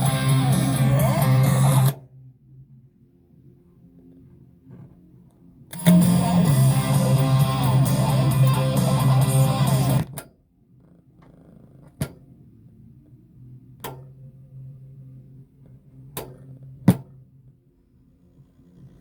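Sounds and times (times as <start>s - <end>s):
guitar music through amplifier: 0.0s - 2.0s, 5.7s - 10.2s
sharp clicks: 5.7s - 10.3s.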